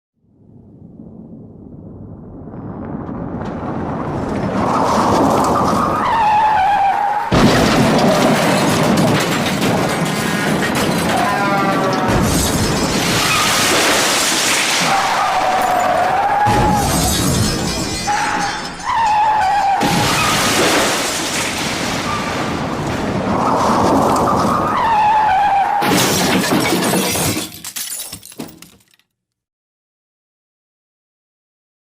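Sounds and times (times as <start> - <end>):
crashing debris clatter: 2.9 - 29.0
tyres squealing in a skid: 4.5 - 21.0, 23.3 - 26.5
tyres screeching: 5.4 - 13.7
car crash impact: 7.3 - 11.4, 12.0 - 24.8, 25.8 - 28.9
glass shattering: 7.3 - 22.3, 25.8 - 29.0.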